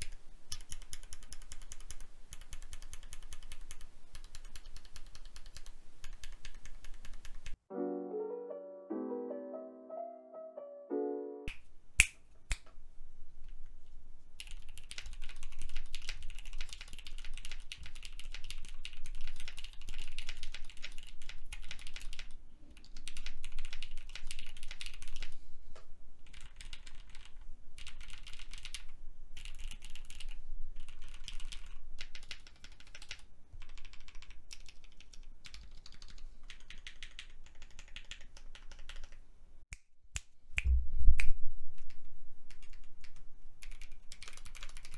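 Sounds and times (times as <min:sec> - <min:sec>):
mechanical keyboard typing: 0:00.0 - 0:07.6, 0:14.4 - 0:25.3, 0:26.2 - 0:39.2, 0:42.5 - 0:44.9.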